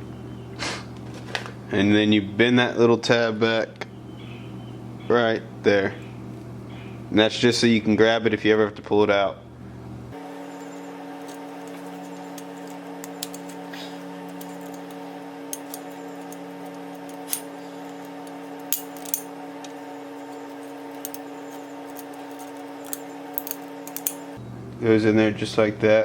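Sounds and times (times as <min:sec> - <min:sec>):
steady multi-tone hum: 0:00.0 - 0:26.0
metallic clicks and clinks: 0:14.3 - 0:16.4, 0:17.0 - 0:19.3, 0:21.0 - 0:24.2.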